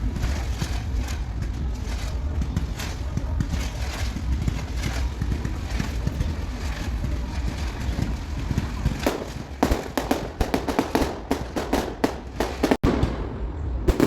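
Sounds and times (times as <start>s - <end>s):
fireworks crackling and popping: 0.0s - 14.0s
steady low rumble: 0.0s - 14.0s.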